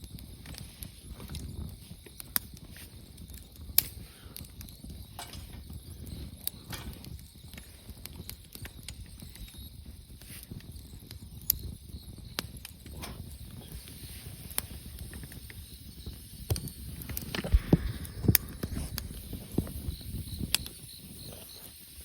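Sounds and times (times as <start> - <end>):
campfire crackling and popping: 0.0 - 21.2
low fire rumble: 17.0 - 21.2.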